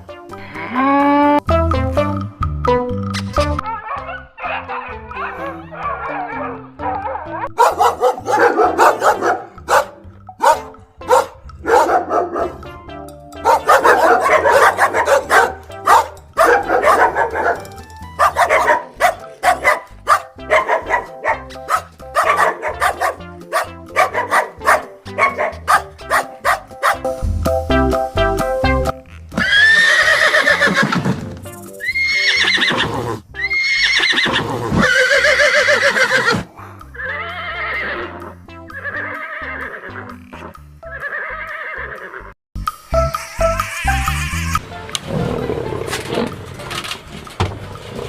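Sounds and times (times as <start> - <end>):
background music: 0.0 - 48.0
dog barking: 3.7 - 12.6, 13.4 - 27.0.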